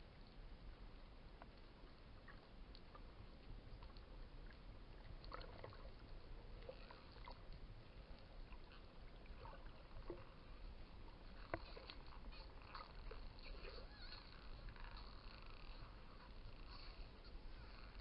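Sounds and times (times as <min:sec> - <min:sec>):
underwater rumble: 0:00.0 - 0:18.0
dolphin chirps and clicks: 0:11.2 - 0:18.0.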